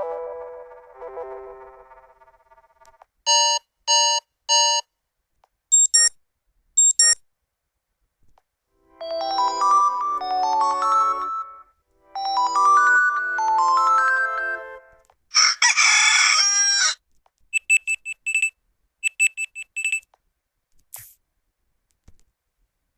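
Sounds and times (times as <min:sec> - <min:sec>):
high electronic beeps: 0:05.7 - 0:06.2, 0:06.8 - 0:07.2
melodic ringtone: 0:08.9 - 0:14.9
rooster-crow alarm sound: 0:15.3 - 0:17.0.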